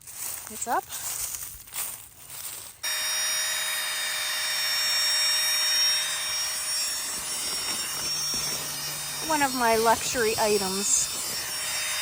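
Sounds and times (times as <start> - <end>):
electric motor and fan whining: 2.8 - 12.0.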